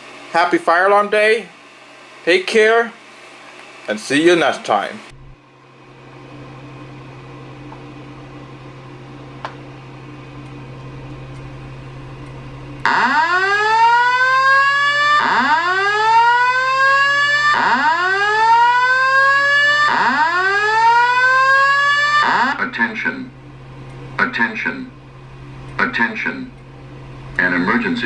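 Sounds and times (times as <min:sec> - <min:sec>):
steady low hum: 0:00.0 - 0:16.5, 0:22.5 - 0:28.0
fire alarm whoop tone: 0:12.9 - 0:22.6.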